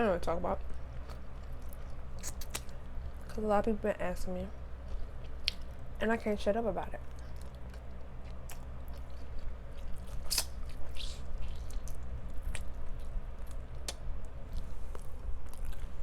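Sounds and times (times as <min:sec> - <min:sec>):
steady low hum: 0:00.0 - 0:16.0
chewing crispy fried chicken: 0:00.2 - 0:03.4, 0:04.6 - 0:16.0
wet squishy sounds: 0:08.5 - 0:12.7.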